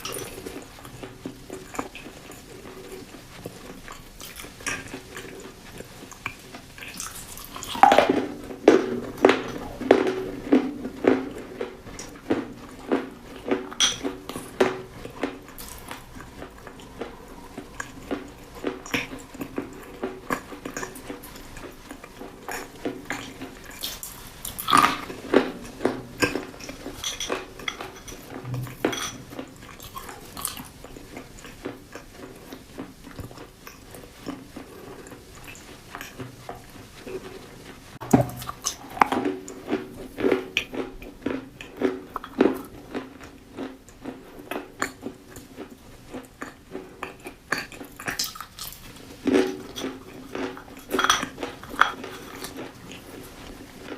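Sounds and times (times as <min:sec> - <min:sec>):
chewing crunchy food: 0:00.0 - 0:53.9.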